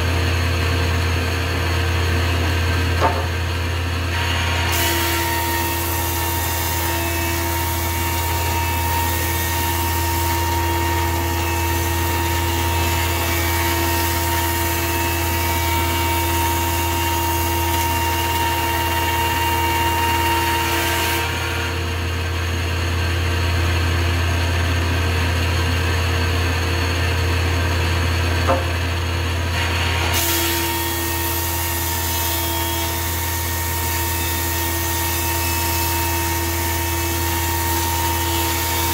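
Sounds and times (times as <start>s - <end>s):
planer cutting wood: 0.0s - 24.6s, 27.3s - 38.9s
low machine hum: 0.0s - 38.9s.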